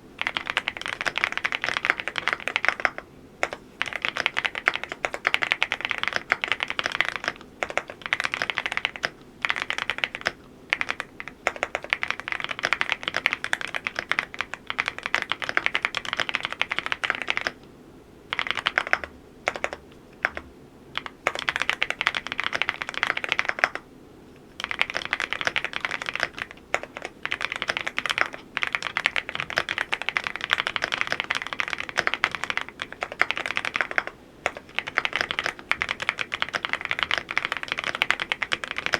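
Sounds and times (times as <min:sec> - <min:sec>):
mechanical keyboard typing: 0:00.2 - 0:17.6, 0:18.3 - 0:20.4, 0:21.0 - 0:23.8, 0:24.6 - 0:38.9.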